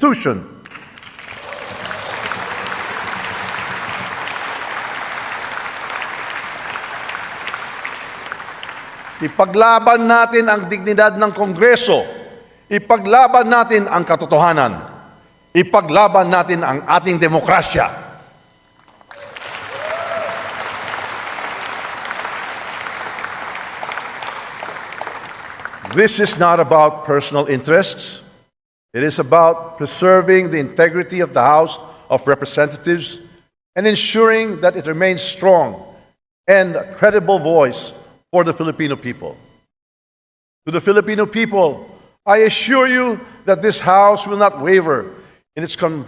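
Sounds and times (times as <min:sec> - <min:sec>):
crowd applauding: 0:00.6 - 0:09.6, 0:18.9 - 0:26.3.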